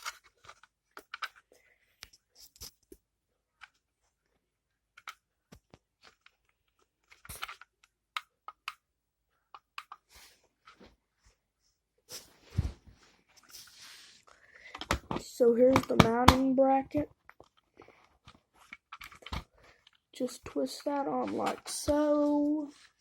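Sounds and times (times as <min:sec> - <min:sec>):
plastic handling clicks and scrapes: 0:00.0 - 0:03.0, 0:05.0 - 0:08.8, 0:09.5 - 0:11.0, 0:13.3 - 0:23.0.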